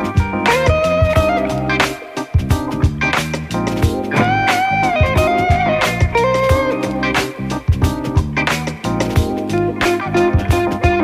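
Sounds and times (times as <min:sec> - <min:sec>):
bass: 0:00.0 - 0:11.0
guitar: 0:00.0 - 0:11.0
drum hits: 0:04.1 - 0:05.7.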